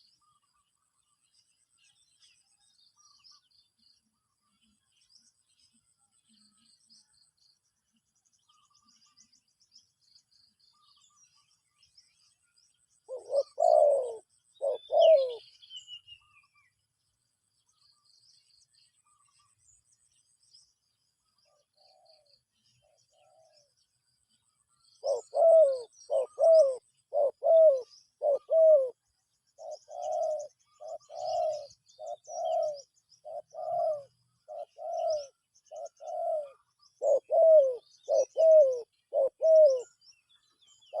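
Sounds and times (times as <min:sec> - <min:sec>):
small birds chirping: 0:00.0 - 0:41.0
dove cooing: 0:13.1 - 0:15.6, 0:21.5 - 0:23.7, 0:25.0 - 0:29.0, 0:29.6 - 0:40.0.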